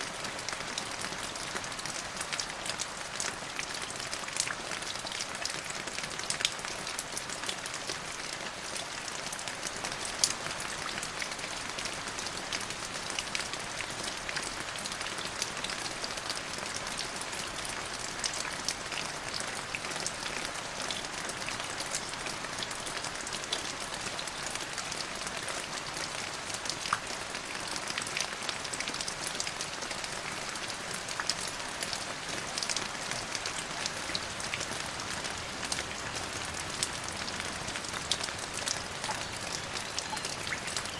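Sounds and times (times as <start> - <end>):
hiss of downpour: 0.0 - 40.9
raindrops ticking on surface: 0.0 - 40.9.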